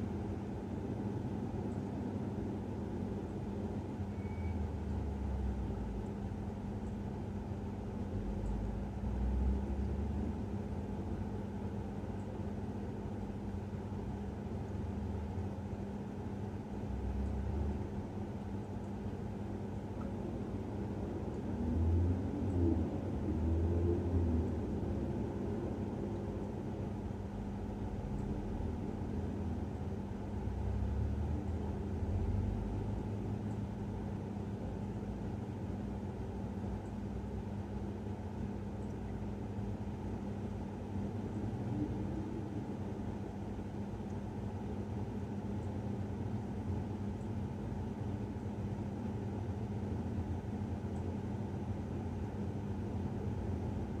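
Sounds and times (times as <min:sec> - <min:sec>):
muffled traffic hum: 0:04.6 - 0:13.3, 0:16.6 - 0:54.0
passing vehicles rumbling: 0:20.3 - 0:26.6.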